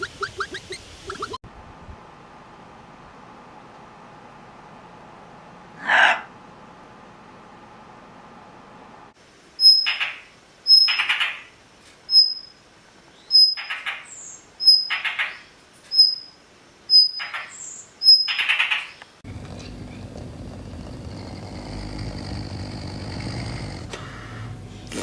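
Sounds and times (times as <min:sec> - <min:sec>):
bird calling with harsh rasp: 0:09.6 - 0:11.5, 0:16.9 - 0:19.0.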